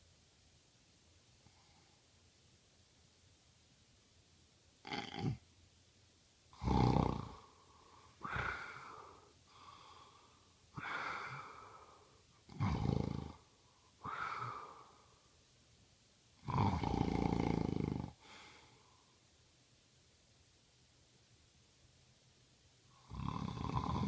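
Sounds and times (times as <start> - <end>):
man snoring: 4.8 - 5.4, 6.6 - 7.5, 8.2 - 10.0, 10.8 - 11.8, 12.5 - 13.4, 16.4 - 18.3, 23.0 - 24.0.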